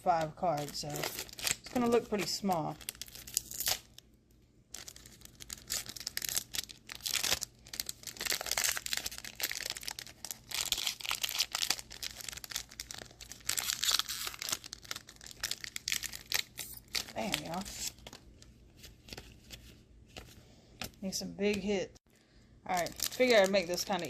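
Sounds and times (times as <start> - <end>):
foil wrapper tearing and crinkling: 0.4 - 4.0, 4.7 - 18.3, 22.7 - 24.0.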